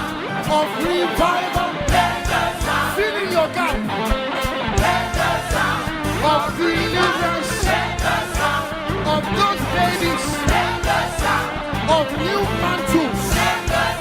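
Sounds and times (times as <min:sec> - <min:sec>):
band playing gospel music: 0:00.0 - 0:14.0
voices singing: 0:00.0 - 0:14.0.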